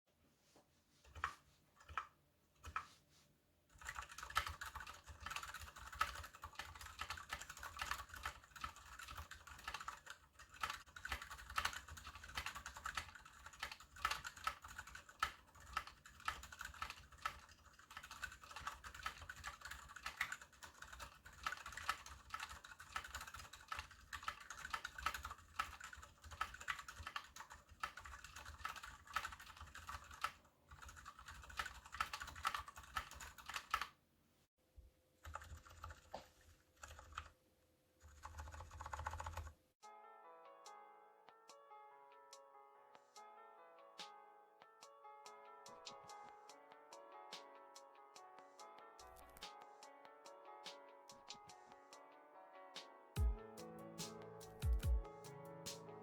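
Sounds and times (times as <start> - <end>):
mechanical keyboard typing: 1.0 - 2.9, 3.7 - 34.0, 35.2 - 37.3, 38.0 - 39.5, 49.0 - 49.5.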